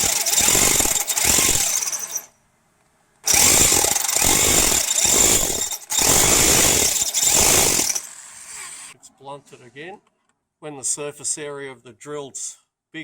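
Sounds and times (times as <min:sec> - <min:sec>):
power drill boring into steel: 0:00.0 - 0:02.3, 0:03.3 - 0:09.0.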